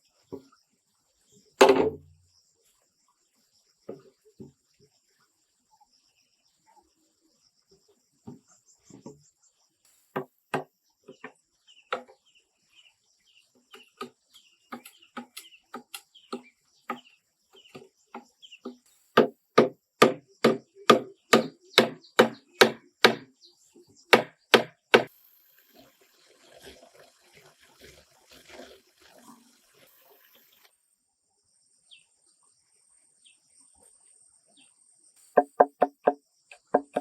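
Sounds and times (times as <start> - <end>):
wood chopping strokes: 13.7 - 23.3, 24.1 - 25.9, 35.4 - 37.0.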